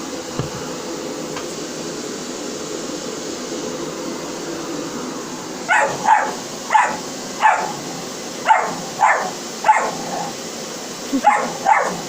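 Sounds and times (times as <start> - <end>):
vacuum cleaner running: 0.0 - 12.0
dog barking: 5.7 - 10.4, 11.1 - 12.0.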